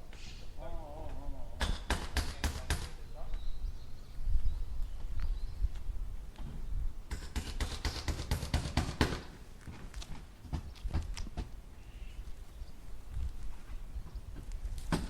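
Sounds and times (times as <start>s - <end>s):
hammer driving nails: 1.6s - 3.0s, 7.1s - 9.4s.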